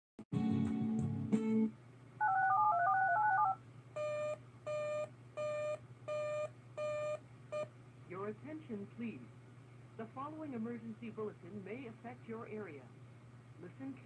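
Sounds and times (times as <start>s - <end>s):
telephone touch tones: 2.2s - 7.2s.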